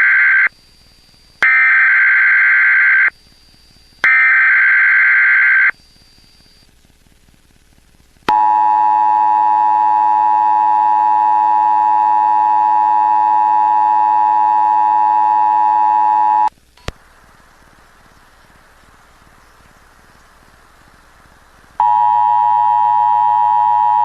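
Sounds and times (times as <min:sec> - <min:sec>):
faint hiss: 0:16.5 - 0:23.0.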